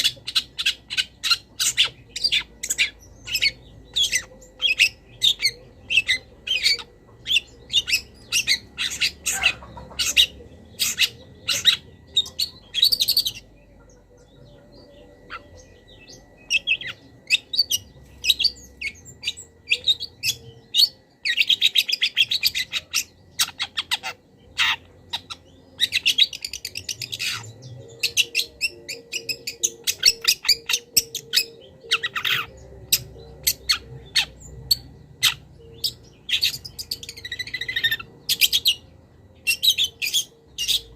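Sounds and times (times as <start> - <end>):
bird rapid chattering: 0.0 - 13.5.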